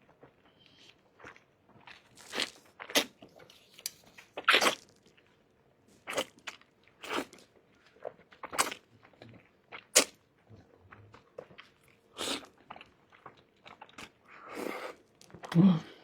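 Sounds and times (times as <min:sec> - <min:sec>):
crunchy bites and chewing: 0:00.7 - 0:03.2, 0:04.3 - 0:05.2, 0:06.1 - 0:10.2.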